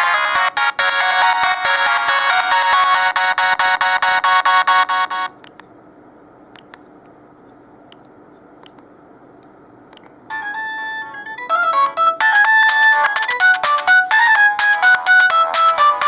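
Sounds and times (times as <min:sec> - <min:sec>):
faint clicks: 0:05.4 - 0:05.7, 0:06.5 - 0:10.2
bright electronic ringtone tune: 0:10.3 - 0:13.7
mobile phone ringtone: 0:10.3 - 0:15.0.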